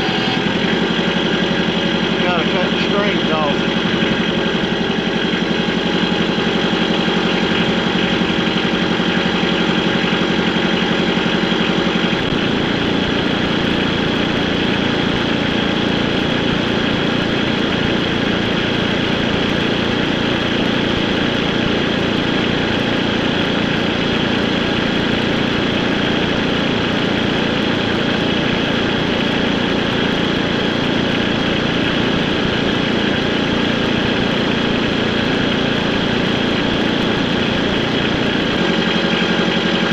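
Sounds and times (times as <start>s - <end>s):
vehicle engine running: 0.0s - 39.9s.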